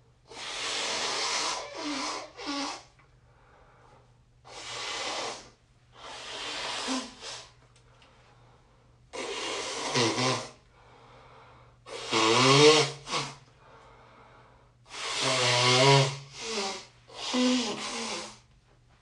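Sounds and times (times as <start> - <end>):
person blowing congested nose: 0.2 - 3.0, 4.4 - 7.6, 9.1 - 10.6, 11.9 - 13.4, 14.9 - 18.5.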